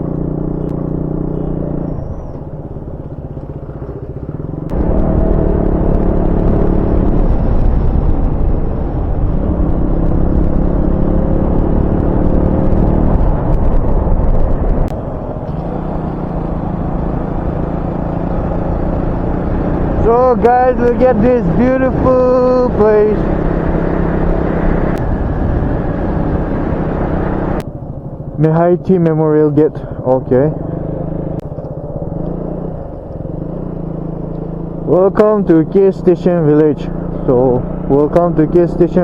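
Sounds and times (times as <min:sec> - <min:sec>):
motorcycle engine running: 0:00.0 - 0:39.0
loud low rumble: 0:04.3 - 0:29.0.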